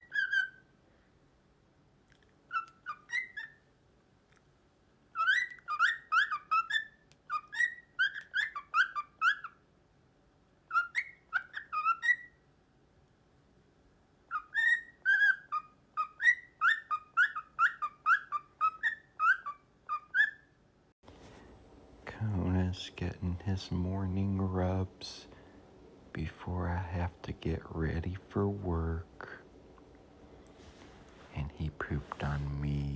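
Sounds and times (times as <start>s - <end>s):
cockatiel whistling and chirping: 0.0s - 0.7s, 2.5s - 3.6s, 5.2s - 9.6s, 10.7s - 12.4s, 14.3s - 20.5s.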